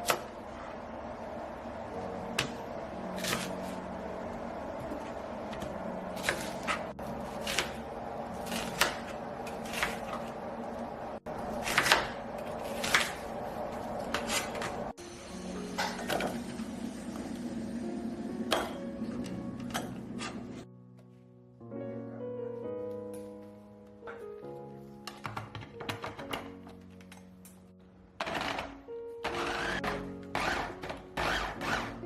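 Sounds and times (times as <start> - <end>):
steady appliance hum: 0.0 - 20.6.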